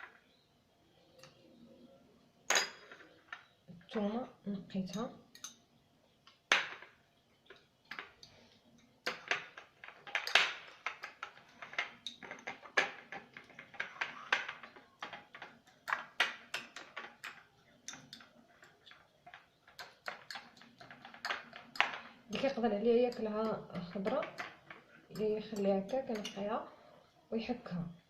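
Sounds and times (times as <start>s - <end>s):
kitchen utensils clicking and scraping: 6.5s - 26.8s.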